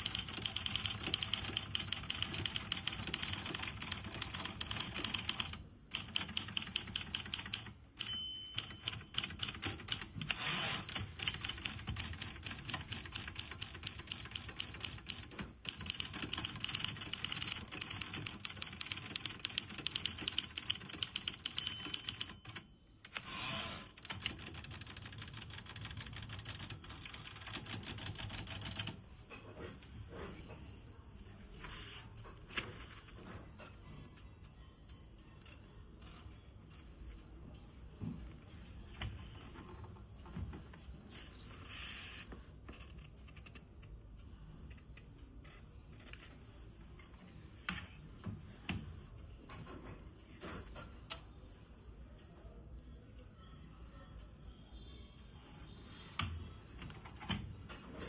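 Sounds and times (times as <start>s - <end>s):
typewriter margin bell: 0.0s - 10.1s, 15.8s - 28.8s
typewriter keystrokes: 0.0s - 23.2s.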